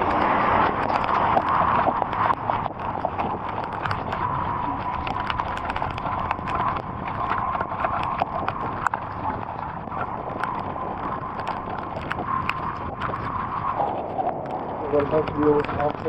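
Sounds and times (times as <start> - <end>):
raindrops ticking on hard surface: 0.0 - 16.0.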